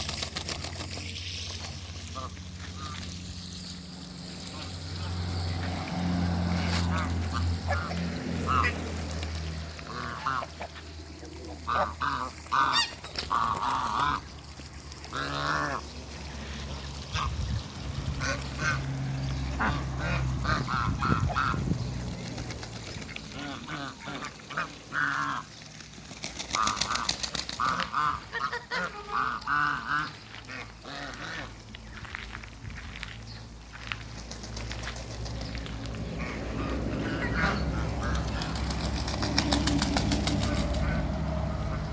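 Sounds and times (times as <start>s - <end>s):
ducks quacking: 1.9s - 3.2s, 4.3s - 14.4s, 15.0s - 22.1s, 23.0s - 25.6s, 26.4s - 31.9s, 36.0s - 41.9s
geese honking: 6.6s - 9.0s, 9.8s - 14.3s, 15.1s - 17.4s, 18.2s - 18.9s, 19.5s - 21.7s, 23.3s - 25.5s, 26.6s - 31.6s, 36.1s - 38.6s.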